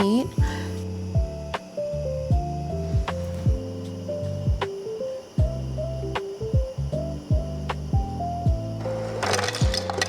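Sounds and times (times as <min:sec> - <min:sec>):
electronic music with kick drum: 0:00.0 - 0:04.8, 0:05.4 - 0:08.8.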